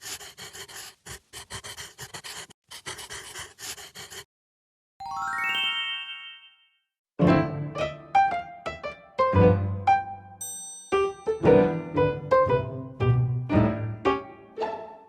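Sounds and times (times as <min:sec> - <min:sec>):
breathy panting puffs: 0:00.0 - 0:04.3
rising chime jingle: 0:05.0 - 0:06.8.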